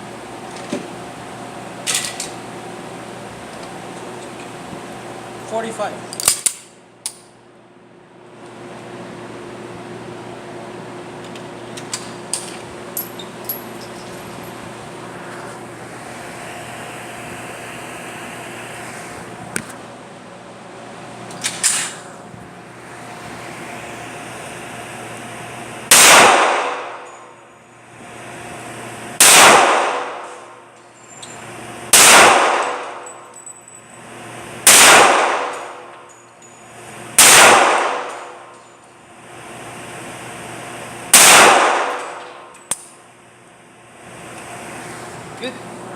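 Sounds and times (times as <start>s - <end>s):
ventilation fans humming: 0.0s - 45.9s
echoing gunshots: 25.9s - 27.0s, 29.2s - 30.4s, 31.9s - 33.0s, 34.6s - 35.9s, 37.2s - 38.4s, 41.1s - 42.2s.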